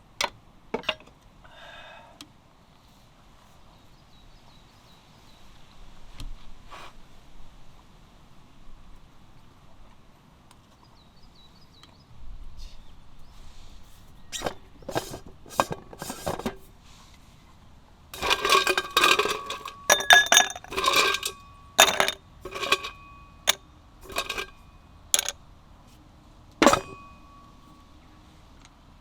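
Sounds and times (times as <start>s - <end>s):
metal cookware clattering: 14.4s - 16.6s, 18.2s - 25.4s, 26.6s - 27.7s.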